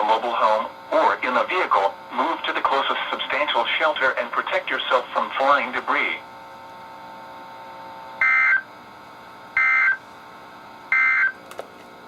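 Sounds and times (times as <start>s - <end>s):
radio hiss: 0.0s - 6.3s.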